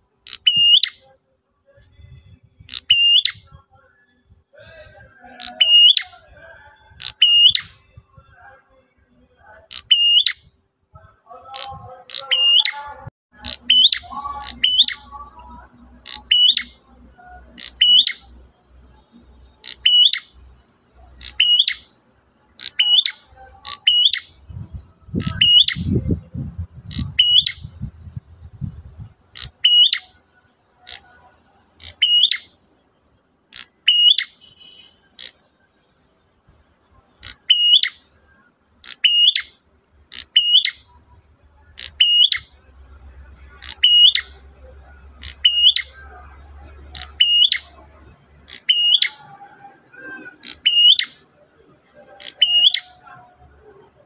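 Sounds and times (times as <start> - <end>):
soft chatter: 0.0 - 54.0
bird calling sharp piercing notes: 0.2 - 1.1, 2.7 - 3.4, 5.3 - 6.2, 6.9 - 7.8, 9.6 - 10.5, 11.6 - 18.4, 19.6 - 20.4, 21.0 - 26.0, 26.8 - 27.8, 29.3 - 30.2, 30.8 - 31.2, 31.8 - 32.6, 33.5 - 35.4, 37.2 - 38.1, 38.8 - 41.0, 41.7 - 42.6, 43.4 - 44.4, 45.2 - 46.0, 46.9 - 47.8, 48.4 - 51.2, 52.1 - 53.2
low rumbling noise: 24.3 - 29.6.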